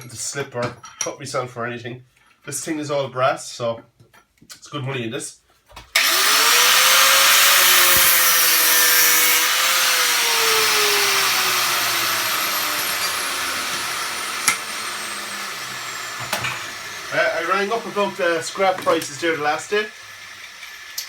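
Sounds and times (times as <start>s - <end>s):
power tool cutting brass: 6.0s - 21.0s.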